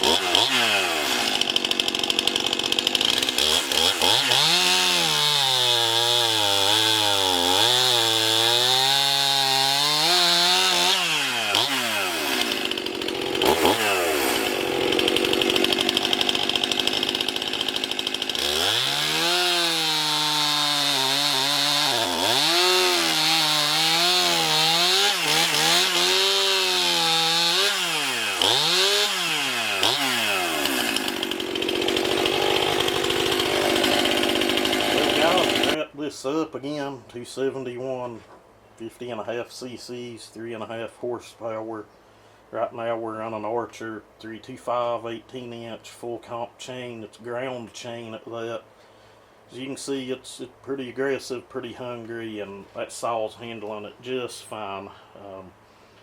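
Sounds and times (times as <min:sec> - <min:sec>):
chainsaw cutting log: 0:00.0 - 0:35.8.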